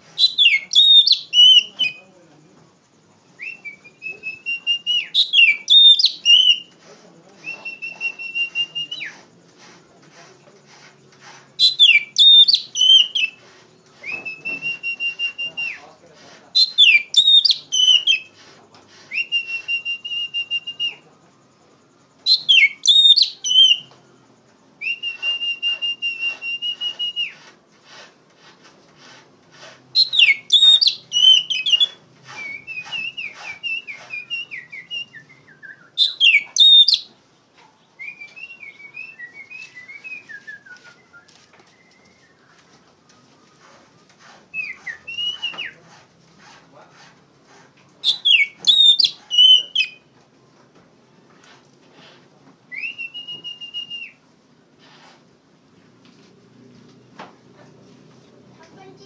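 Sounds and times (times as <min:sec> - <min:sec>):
bird singing: 0:00.2 - 0:02.1, 0:03.2 - 0:06.7, 0:11.6 - 0:15.9, 0:16.6 - 0:18.3, 0:22.2 - 0:24.0, 0:29.9 - 0:37.2, 0:37.8 - 0:45.8, 0:48.0 - 0:50.1.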